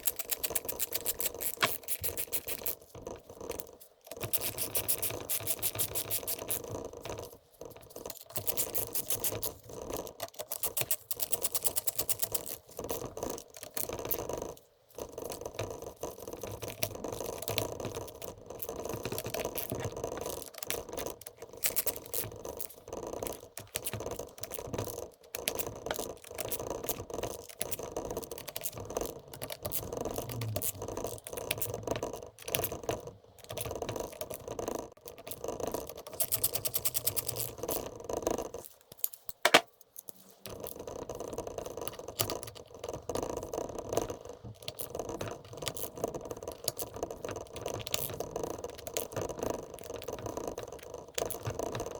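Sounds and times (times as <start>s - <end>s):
hand tools clicking and rattling: 38.9s - 39.8s.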